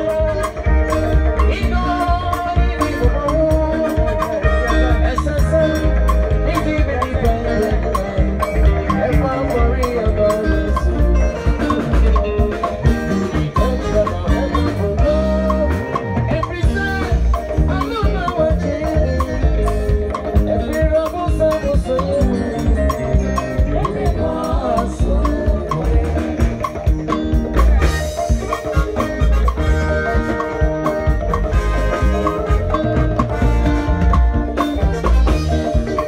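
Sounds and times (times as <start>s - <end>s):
live band playing gospel music: 0.0s - 36.0s.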